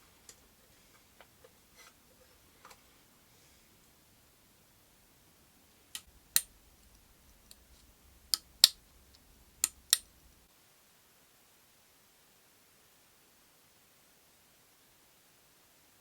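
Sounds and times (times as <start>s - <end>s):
sharp clicks in pairs: 6.0s - 10.4s.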